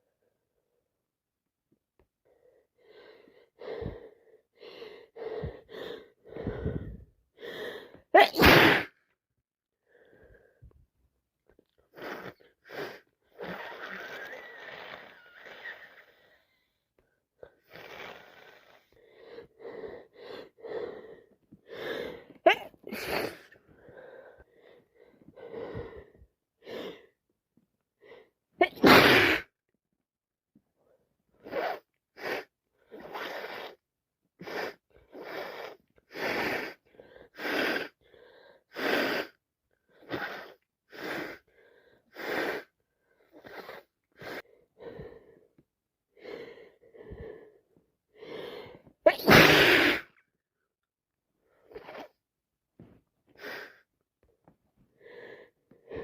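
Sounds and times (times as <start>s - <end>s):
gasping breaths: 2.2s - 8.1s, 11.6s - 27.2s
woman sneezing: 8.2s - 9.0s, 22.5s - 23.5s, 28.6s - 29.5s, 49.1s - 50.2s.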